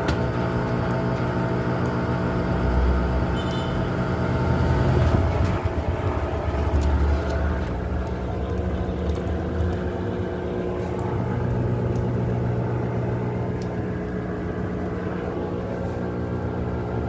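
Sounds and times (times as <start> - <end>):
washing machine motor hum: 0.0 - 17.0
water and fabric churning: 3.9 - 17.0.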